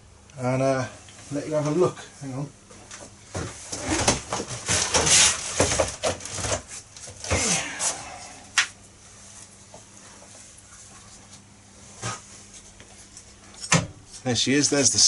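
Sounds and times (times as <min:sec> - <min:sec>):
rummaging and handling clatter: 0:03.3 - 0:07.3.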